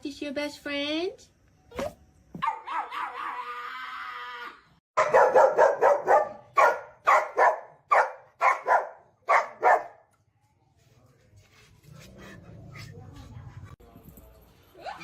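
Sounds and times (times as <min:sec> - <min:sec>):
dog barking loudly: 0:02.4 - 0:03.0, 0:05.0 - 0:10.0.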